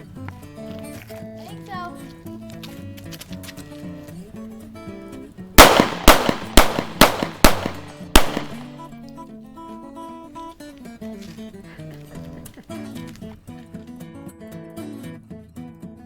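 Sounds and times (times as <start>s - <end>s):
pistol shots: 5.6s - 8.8s.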